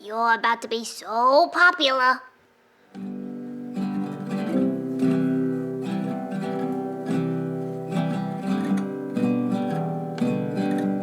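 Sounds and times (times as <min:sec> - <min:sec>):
strummed acoustic guitar: 0:02.9 - 0:11.0.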